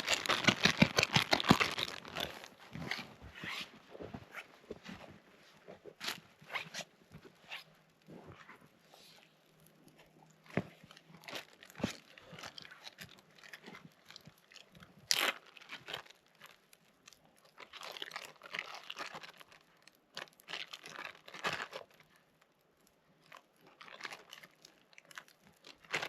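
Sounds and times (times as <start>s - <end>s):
crunching and crinkling handling noises: 0.0s - 26.0s.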